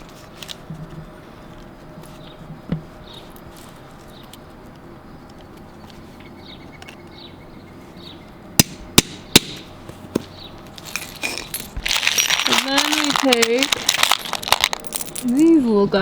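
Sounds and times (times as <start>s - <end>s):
hammer striking punch: 8.6s - 9.7s.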